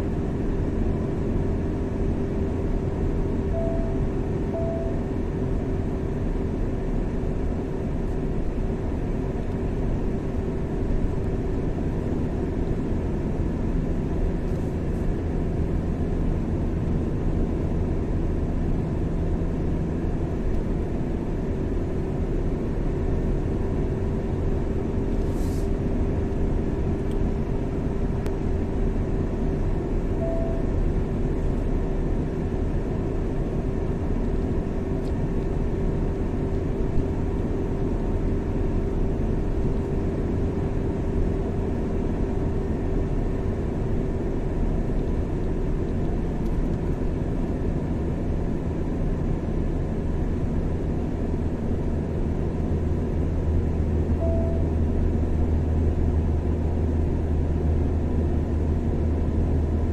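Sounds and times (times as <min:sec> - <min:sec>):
car road and engine noise: 0:00.0 - 0:59.9.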